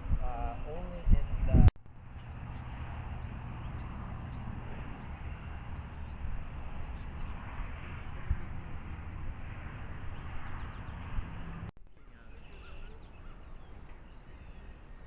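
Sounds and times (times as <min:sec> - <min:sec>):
steady rushing outdoor noise: 0:00.0 - 0:15.0
songbirds chirping: 0:00.1 - 0:15.0.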